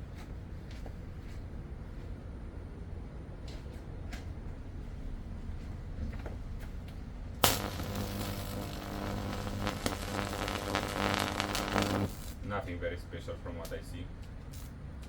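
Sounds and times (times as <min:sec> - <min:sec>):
mains buzz: 0:07.4 - 0:12.4
transformer switch snap: 0:07.4 - 0:12.4
electrical arcing crackle: 0:07.4 - 0:12.5.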